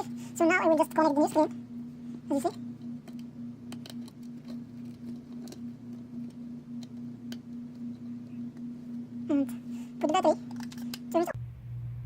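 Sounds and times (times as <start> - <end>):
steady electrical hum: 0.0 - 12.0.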